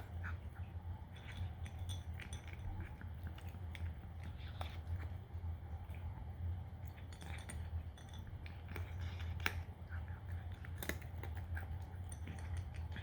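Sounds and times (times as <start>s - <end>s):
cat crunching dry kibble: 0.0s - 13.0s.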